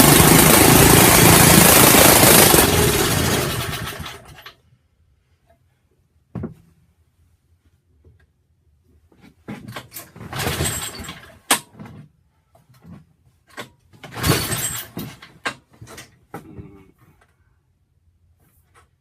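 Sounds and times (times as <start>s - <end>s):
recoil starter rope rasp: 0.0s - 4.4s
engine cranking: 0.0s - 4.5s, 14.1s - 15.2s.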